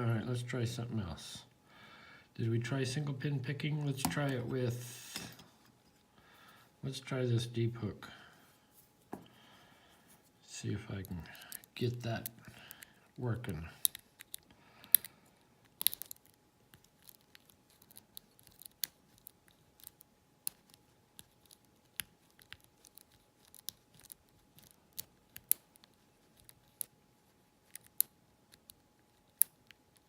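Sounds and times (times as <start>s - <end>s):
lock pick clicking and scratching: 13.8s - 27.0s, 27.6s - 30.0s.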